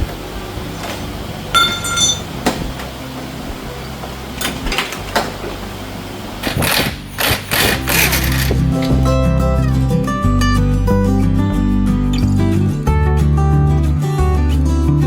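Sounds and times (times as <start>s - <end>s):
low steady hum: 0.0s - 11.0s
metal knocks and tool clatter: 1.6s - 2.9s.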